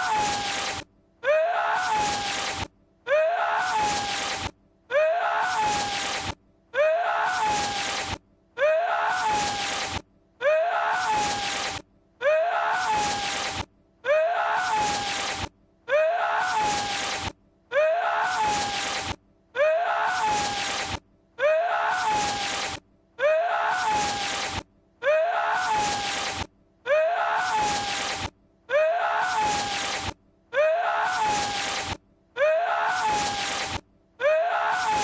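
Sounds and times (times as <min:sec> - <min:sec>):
sharp sneeze-like cry: 0:00.0 - 0:06.2, 0:06.8 - 0:08.0, 0:10.4 - 0:11.7, 0:14.1 - 0:15.3, 0:15.9 - 0:19.0, 0:19.6 - 0:28.2, 0:28.8 - 0:30.0, 0:30.6 - 0:35.0.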